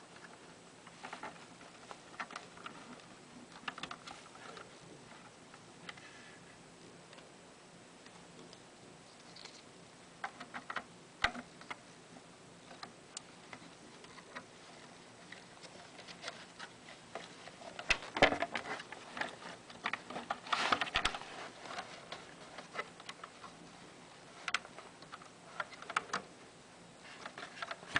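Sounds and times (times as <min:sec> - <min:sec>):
small parts clicking and rattling: 0:09.1 - 0:11.8.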